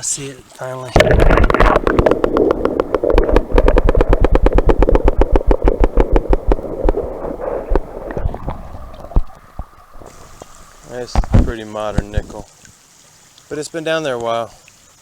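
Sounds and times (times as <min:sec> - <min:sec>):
gravel rattling: 0:01.0 - 0:12.5.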